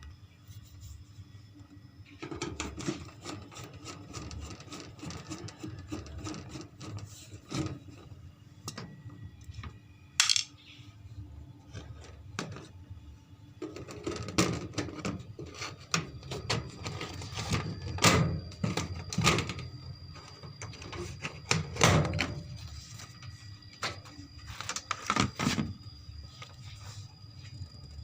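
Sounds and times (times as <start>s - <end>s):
metal tools clinking: 10.2s - 10.6s.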